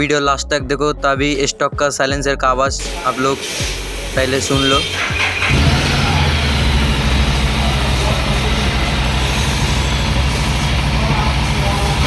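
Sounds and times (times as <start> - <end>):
motorcycle engine running steadily: 5.1 - 12.0.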